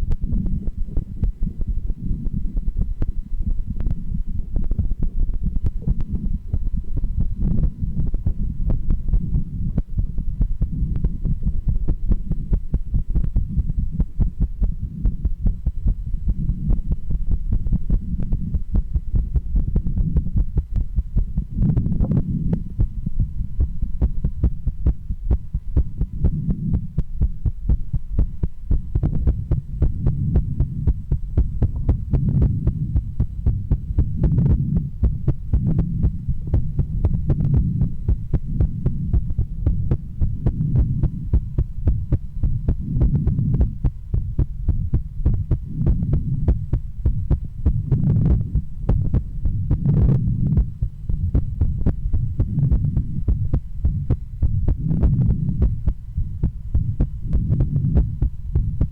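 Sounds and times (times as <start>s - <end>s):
heartbeat through stethoscope: 0.0s - 58.9s
low rumble: 0.0s - 58.9s.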